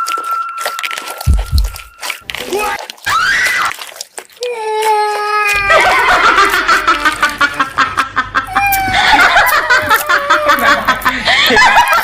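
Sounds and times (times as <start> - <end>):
person laughing: 5.6 - 12.0.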